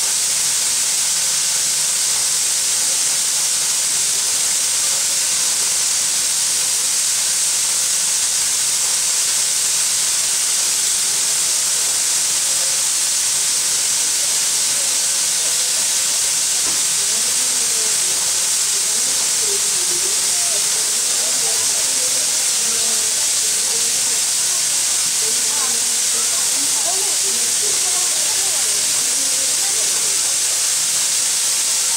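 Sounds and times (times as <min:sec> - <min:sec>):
steam locomotive venting steam: 0:00.0 - 0:31.9
faint voices: 0:10.3 - 0:31.9.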